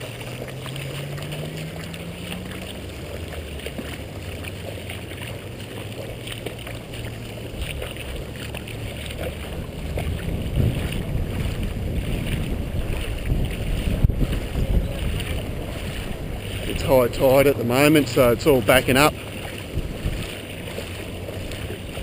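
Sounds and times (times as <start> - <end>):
wind rumbling on microphone: 0.0 - 22.0.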